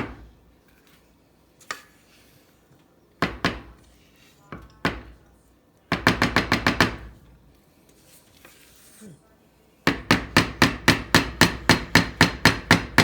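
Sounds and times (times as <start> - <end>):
knocks and taps on kitchenware: 3.2 - 3.8, 4.5 - 5.2, 5.9 - 7.2, 9.9 - 13.0.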